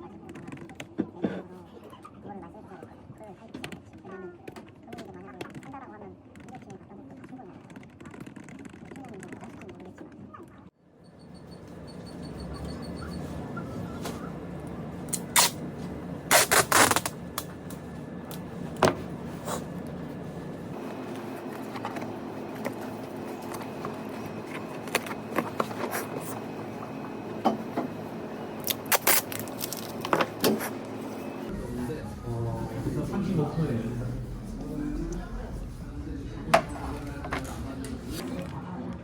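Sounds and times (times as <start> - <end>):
steady low hum: 11.0 - 39.0.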